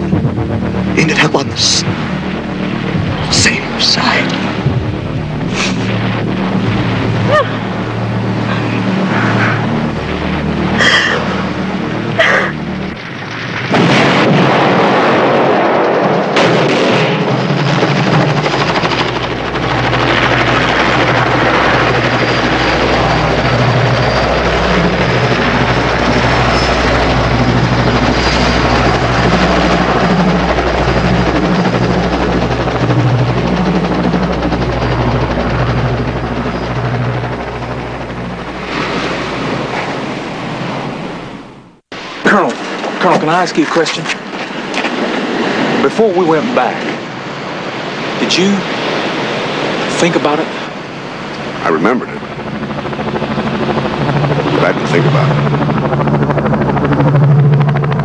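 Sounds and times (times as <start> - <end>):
loud burst of noise: 0.0 - 43.1
helicopter rotor pulsing: 0.0 - 58.0
gunshots and blasts: 12.9 - 22.4.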